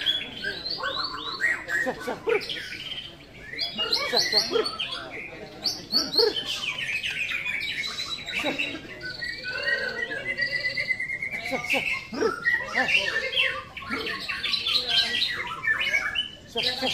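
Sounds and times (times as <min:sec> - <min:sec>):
songbirds singing whistles and trills: 0:00.0 - 0:16.9.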